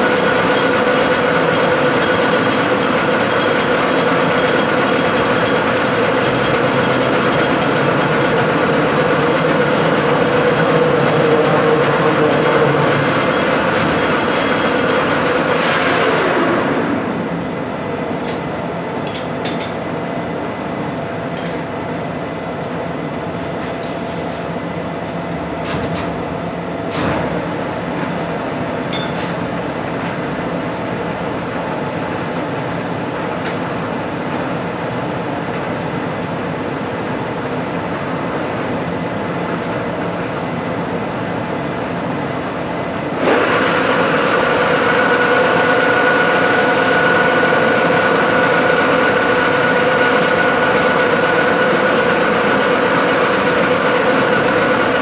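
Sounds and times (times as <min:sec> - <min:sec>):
machine winding down whine: 0:00.0 - 0:17.7, 0:43.2 - 0:55.0
steady machine hum: 0:00.0 - 0:23.7, 0:26.2 - 0:55.0
clinks: 0:28.9 - 0:29.4.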